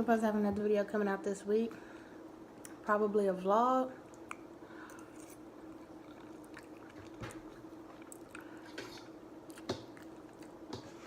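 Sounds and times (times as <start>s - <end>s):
faint steady hum: 0.0s - 11.0s
person chewing food: 4.1s - 11.0s.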